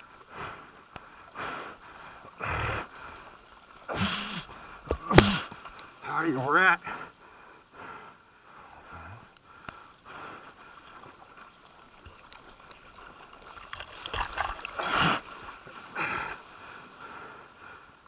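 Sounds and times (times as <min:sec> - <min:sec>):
seawater sloshing and splashing: 0:10.3 - 0:17.0.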